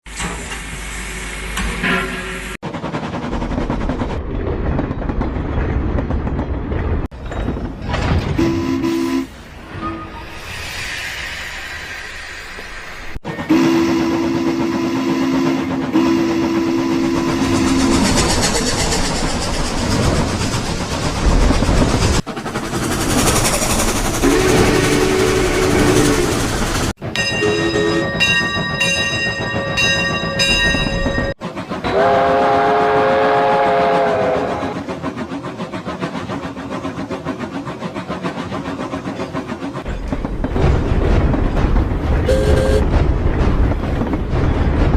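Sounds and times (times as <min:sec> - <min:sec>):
running train rushing: 0:00.1 - 0:44.9
locomotive horn blasts: 0:08.4 - 0:10.0, 0:13.5 - 0:17.8, 0:24.2 - 0:26.2, 0:31.9 - 0:34.6, 0:42.3 - 0:42.9
hiss: 0:10.3 - 0:13.2
train chime whistle: 0:27.2 - 0:28.9, 0:42.3 - 0:42.8.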